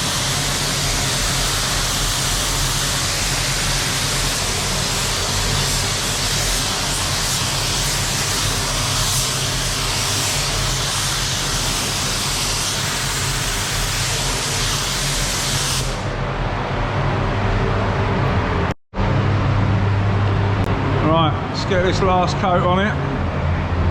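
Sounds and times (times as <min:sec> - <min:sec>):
steady low hum: 0:15.9 - 0:23.9.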